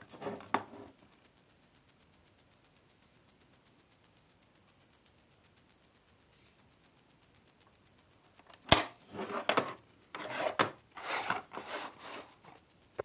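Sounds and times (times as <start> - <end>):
clicks: 8.4 - 13.0
packaging rubbing and rustling: 8.7 - 12.6.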